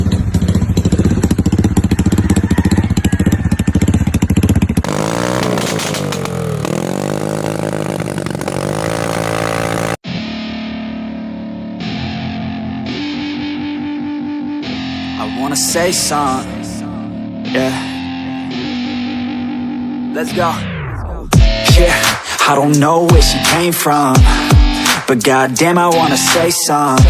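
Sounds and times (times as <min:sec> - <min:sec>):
scooter engine revving: 0:00.0 - 0:10.0
music: 0:10.0 - 0:27.0.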